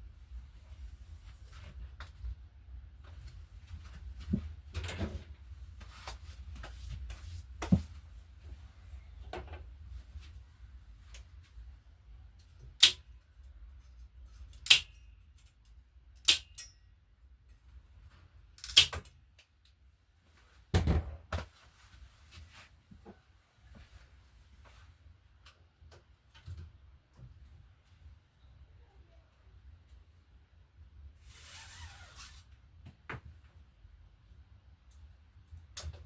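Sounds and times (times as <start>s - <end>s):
tools and bike parts clinking: 14.3s - 16.9s.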